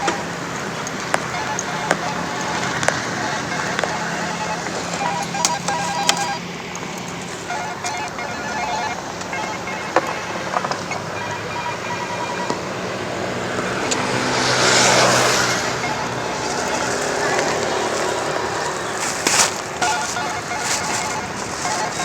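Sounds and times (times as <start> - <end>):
clicks: 0.0 - 11.7
short electronic beeps: 0.0 - 12.8, 13.6 - 22.0
vehicle engine running: 0.0 - 22.0.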